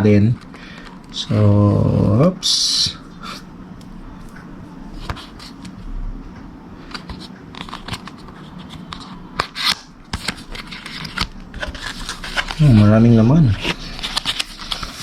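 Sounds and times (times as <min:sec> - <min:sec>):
cardboard packaging rustling: 0:06.9 - 0:15.0.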